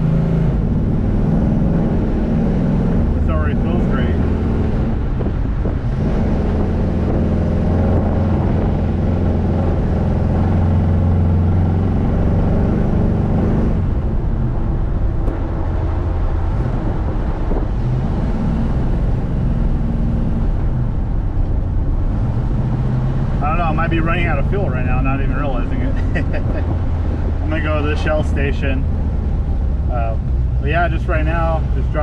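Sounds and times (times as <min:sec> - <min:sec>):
car engine cruising: 0:00.0 - 0:32.0.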